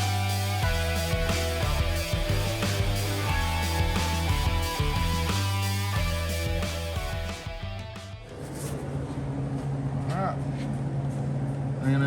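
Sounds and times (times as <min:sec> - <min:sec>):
rock background music: 0:00.0 - 0:08.8.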